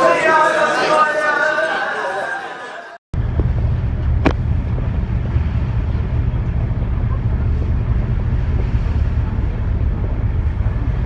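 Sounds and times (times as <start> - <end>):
boat engine rumbling: 3.1 - 11.0.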